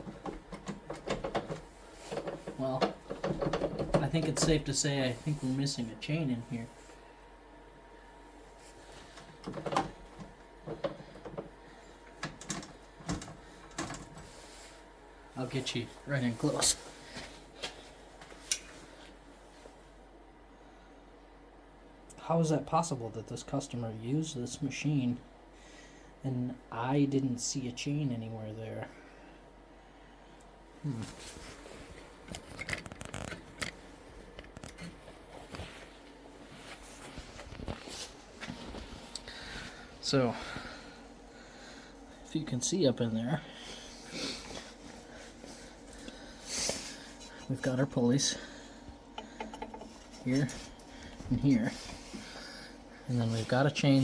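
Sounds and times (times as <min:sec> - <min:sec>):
small handling clicks and rustles: 0:00.0 - 0:05.4, 0:08.7 - 0:14.4, 0:16.0 - 0:19.8, 0:30.4 - 0:39.3, 0:48.8 - 0:52.3.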